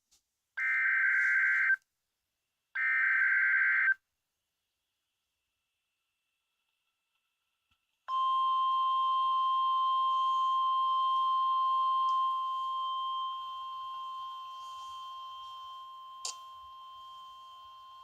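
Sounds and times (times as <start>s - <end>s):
steady alarm beep tone: 8.1s - 18.0s.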